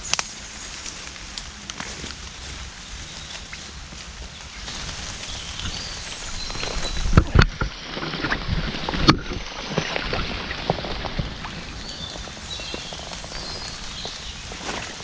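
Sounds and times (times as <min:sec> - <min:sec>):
twigs snapping: 0:00.0 - 0:02.7
footsteps through wet brush: 0:00.0 - 0:15.0
leaves and twigs crackling: 0:00.0 - 0:15.0.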